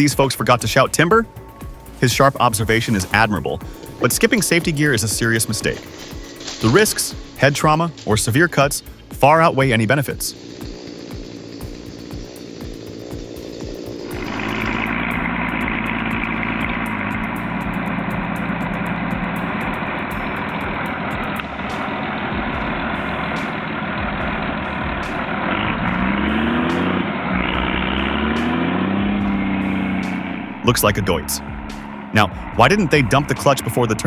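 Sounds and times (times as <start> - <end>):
tractor diesel engine under load: 0.0 - 34.0.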